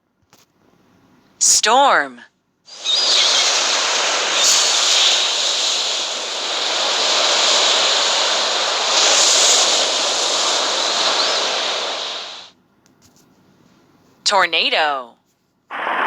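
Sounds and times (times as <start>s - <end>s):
wind rushing: 2.7s - 12.5s
heavy rain: 4.1s - 12.5s.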